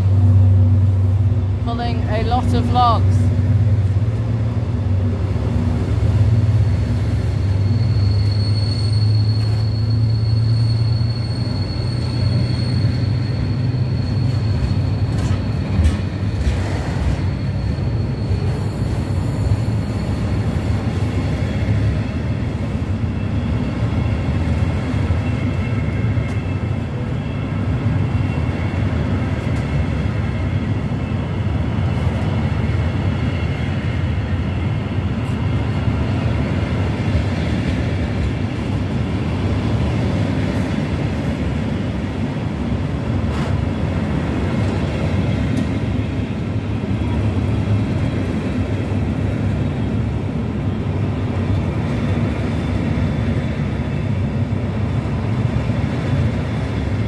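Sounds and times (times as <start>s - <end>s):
freight train rumbling past: 0.0s - 57.0s
high wheel squeal: 7.3s - 21.8s
train knocks: 14.1s - 17.5s.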